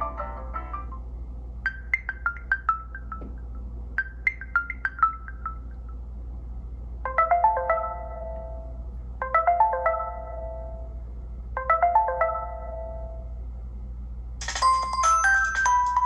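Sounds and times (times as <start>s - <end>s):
chiming ringtone phrase: 1.7s - 5.8s, 7.1s - 11.0s
plucked marimba-like ringtone notes: 1.7s - 6.0s.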